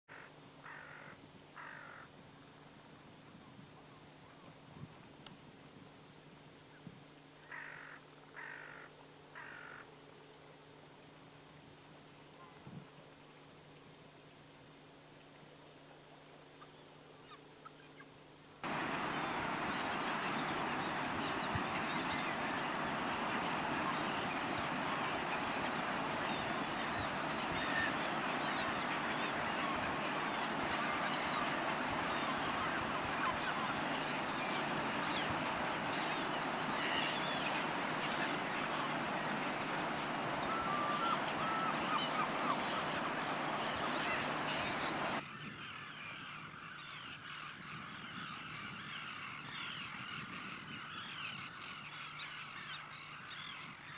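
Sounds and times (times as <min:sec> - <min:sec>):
gulls calling: 0:18.6 - 0:53.9.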